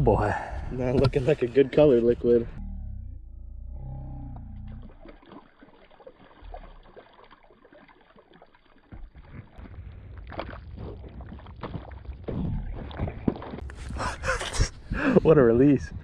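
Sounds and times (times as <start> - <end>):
low rumbling on microphone: 2.1 - 5.0, 9.6 - 16.0
river water sloshing and gurgling: 4.6 - 14.9
small splashy ticks: 4.7 - 13.6.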